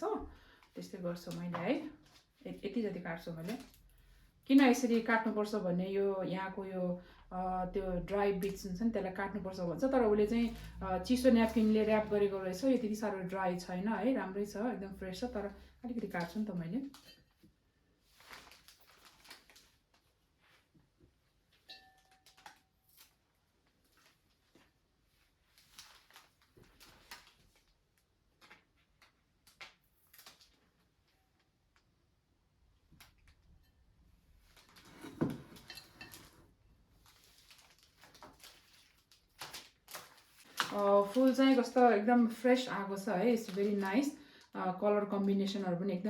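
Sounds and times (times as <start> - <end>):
flowers rustling: 10.4 - 13.2, 18.0 - 20.7, 23.8 - 27.8, 37.0 - 44.2.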